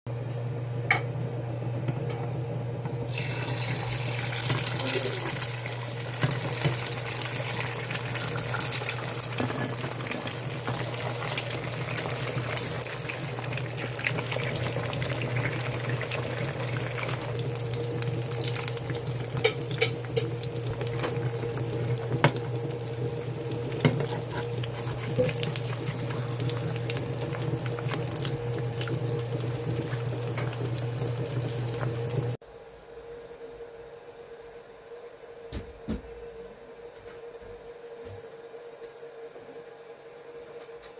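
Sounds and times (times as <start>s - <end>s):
eggs sizzling in oil: 3.0s - 32.4s
oil popping and crackling: 3.0s - 32.4s.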